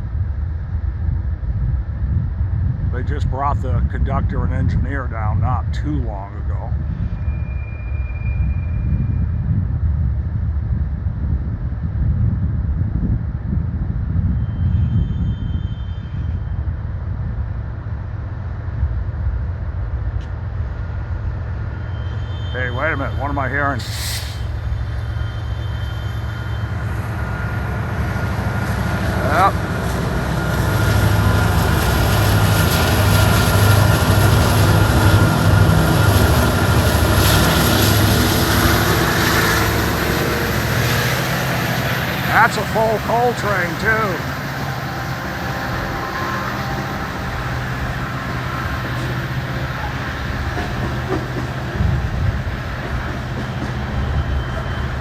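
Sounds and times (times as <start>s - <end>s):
freight train rumbling: 0.0s - 55.0s
locomotive engine drone: 0.0s - 55.0s
high thin squeals: 21.8s - 27.2s.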